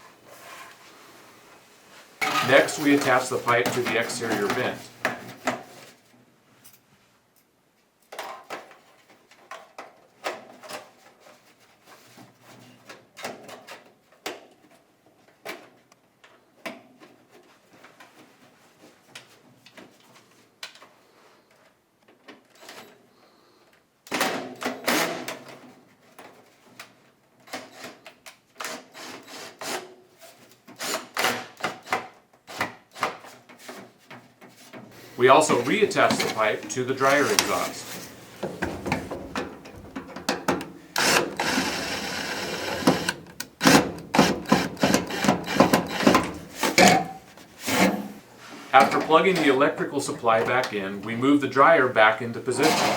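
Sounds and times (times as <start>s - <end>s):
knocks and clicks of pipe handling: 38.3s - 41.4s, 42.7s - 47.1s.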